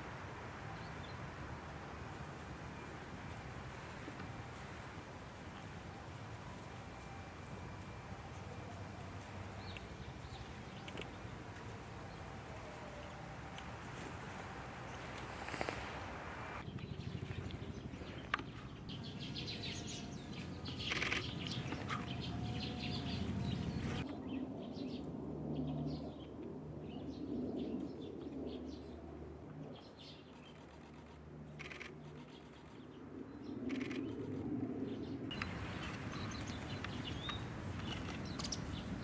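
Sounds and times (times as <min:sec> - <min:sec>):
bird calls and chirps: 0:16.6 - 0:25.0, 0:34.9 - 0:39.0.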